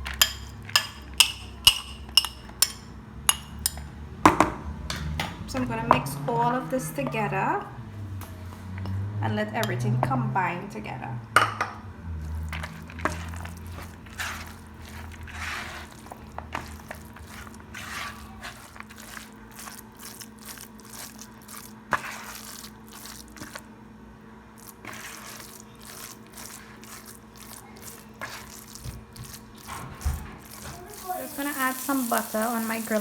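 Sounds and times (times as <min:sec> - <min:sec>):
wet squelching and scraping: 0:12.0 - 0:23.7, 0:24.5 - 0:33.0.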